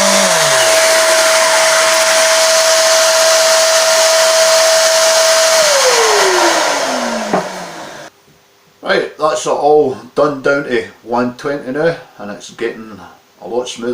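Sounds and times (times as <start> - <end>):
electric sander whine: 0.0 - 8.1
motor winding down: 0.0 - 8.1.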